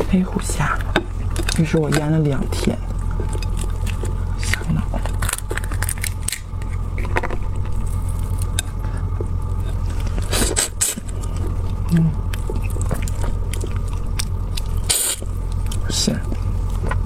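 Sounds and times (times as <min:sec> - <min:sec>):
steady low hum: 0:00.0 - 0:17.0
short crackling bursts: 0:09.8 - 0:16.8.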